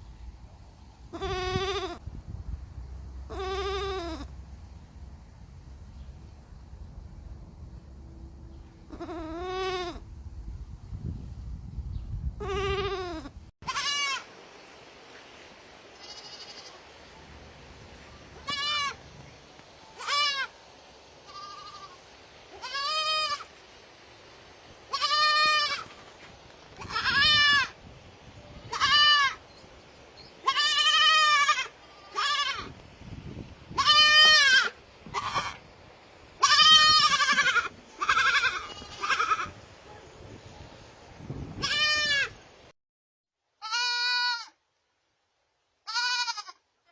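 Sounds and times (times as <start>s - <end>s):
baby goats bleating: 1.1s - 2.0s, 3.3s - 4.4s, 8.9s - 10.0s, 12.4s - 14.3s, 16.0s - 16.8s, 18.4s - 19.0s, 20.0s - 20.5s, 21.3s - 23.5s, 24.9s - 26.1s, 26.8s - 27.8s, 28.7s - 29.4s, 30.4s - 32.7s, 33.7s - 35.6s, 36.4s - 39.6s, 41.6s - 42.4s, 43.6s - 44.6s, 45.8s - 46.6s.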